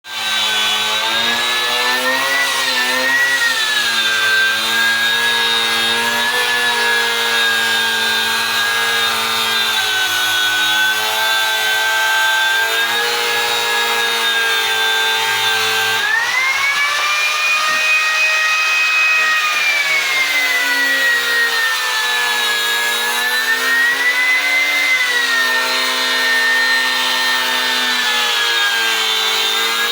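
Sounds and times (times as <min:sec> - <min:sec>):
power tool motor running: 0:00.1 - 0:29.9.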